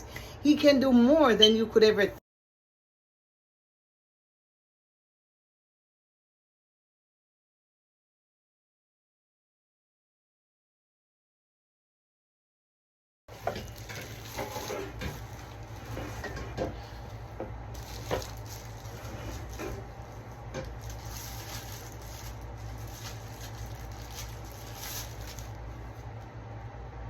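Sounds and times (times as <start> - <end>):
steady low hum: 13.3 - 27.0.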